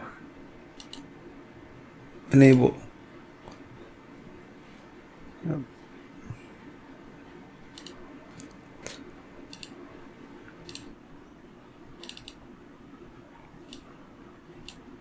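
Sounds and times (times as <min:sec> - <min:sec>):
faint steady hum: 0:00.0 - 0:15.0
computer mouse clicking: 0:00.8 - 0:01.1, 0:07.7 - 0:09.8, 0:10.5 - 0:11.0, 0:12.0 - 0:12.4, 0:13.6 - 0:13.9, 0:14.6 - 0:14.9.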